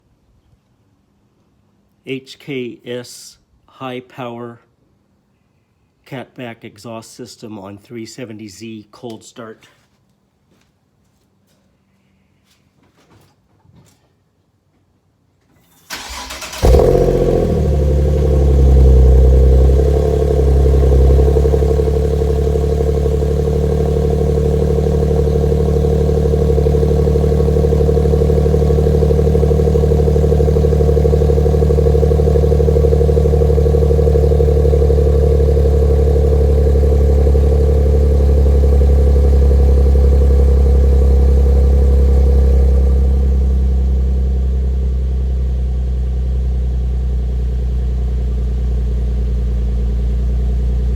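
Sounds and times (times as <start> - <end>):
car engine starting and idling: 15.8 - 50.9.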